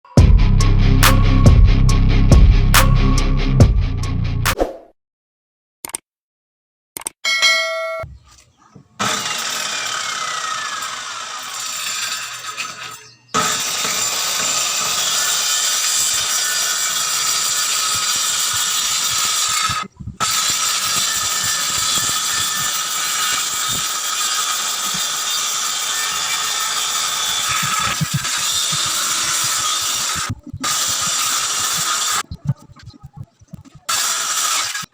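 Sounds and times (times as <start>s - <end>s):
power tool cutting wood: 9.0s - 32.2s, 33.9s - 34.9s.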